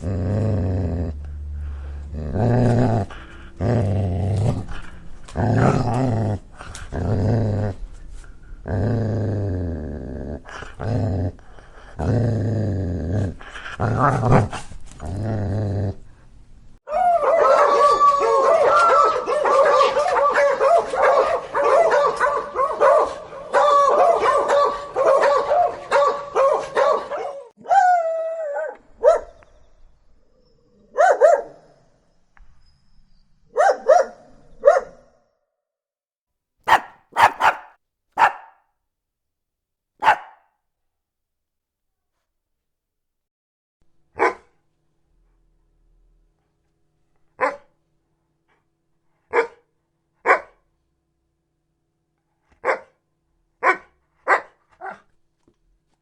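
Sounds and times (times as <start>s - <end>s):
dogs barking angrily: 18.7s - 27.3s, 36.7s - 38.6s, 40.0s - 40.4s.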